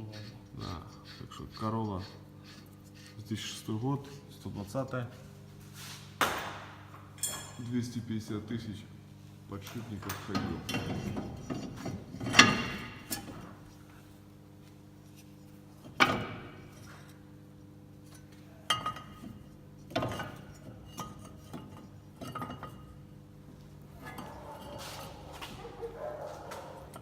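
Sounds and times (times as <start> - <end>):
metal tools clinking and knocking: 7.2 - 7.7, 19.9 - 22.9.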